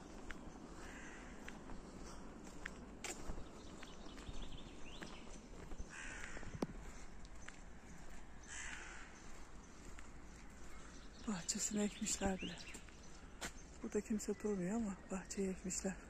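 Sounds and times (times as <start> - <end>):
crow cawing: 0.8 - 1.5, 5.9 - 6.6, 8.4 - 9.3.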